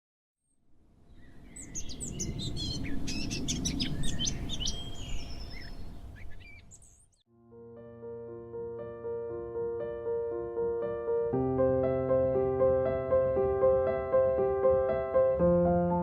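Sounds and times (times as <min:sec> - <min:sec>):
birds chirping: 0:01.0 - 0:07.2
low forest rumble: 0:01.2 - 0:06.4
piano playing: 0:07.3 - 0:16.0.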